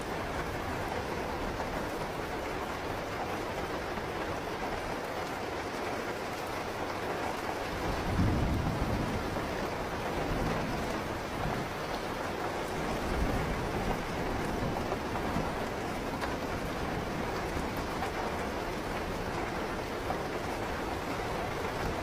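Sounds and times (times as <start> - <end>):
steady rain: 0.0 - 22.0
thunder rumbling: 7.8 - 15.8.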